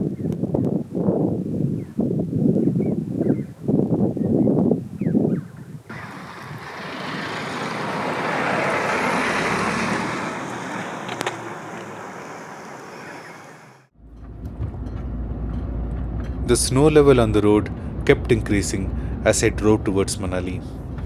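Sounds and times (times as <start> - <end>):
tyre and wind road noise: 0.0 - 21.0
low steady rumble: 14.0 - 21.0.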